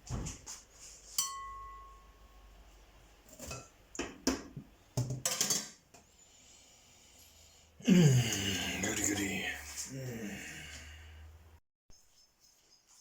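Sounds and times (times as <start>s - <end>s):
pots and utensils clattering: 3.3s - 5.8s.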